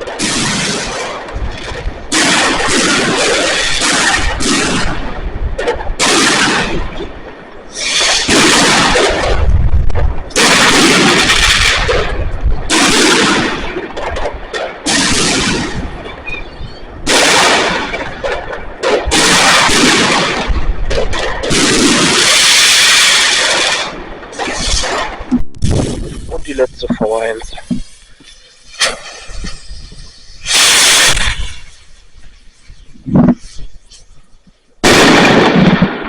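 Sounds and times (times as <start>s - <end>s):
firework bursts with crackle: 0.0s - 36.0s
deep firework boom: 7.9s - 28.0s, 34.8s - 36.0s.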